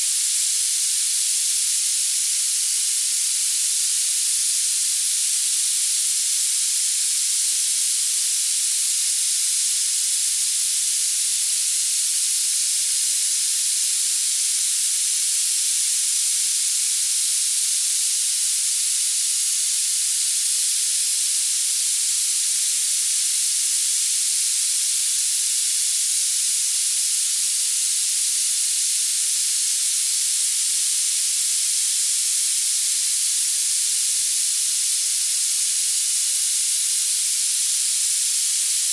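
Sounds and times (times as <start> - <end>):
high-pitched hiss: 27.0 - 38.9.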